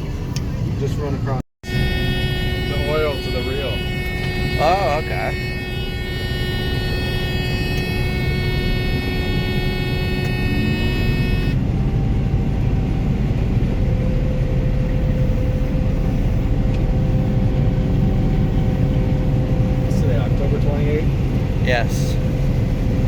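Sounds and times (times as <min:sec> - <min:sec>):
high buzzing tone: 0:01.6 - 0:11.6
diesel engine running: 0:01.6 - 0:23.0.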